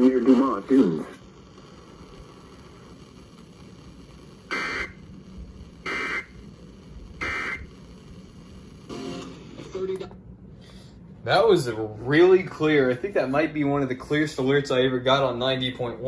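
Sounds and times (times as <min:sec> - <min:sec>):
faint radio hiss: 0:00.0 - 0:16.0
digital data bursts: 0:04.5 - 0:05.0, 0:05.8 - 0:06.3, 0:07.2 - 0:07.7.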